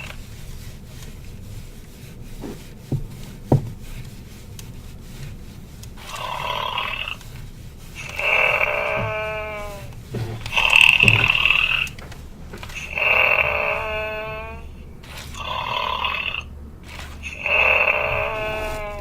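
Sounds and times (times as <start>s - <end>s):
electronic toy snoring: 8.1s - 9.8s, 12.9s - 14.7s, 15.3s - 16.5s, 17.3s - 19.0s.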